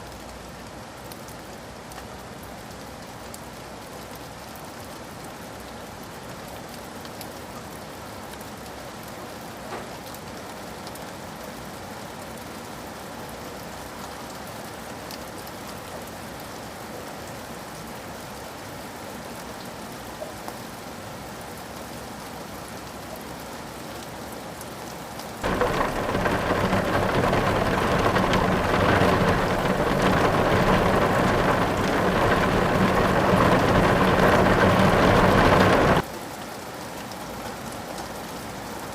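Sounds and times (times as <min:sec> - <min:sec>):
low thunder rumble: 0:25.4 - 0:36.0
rain falling: 0:25.4 - 0:36.1.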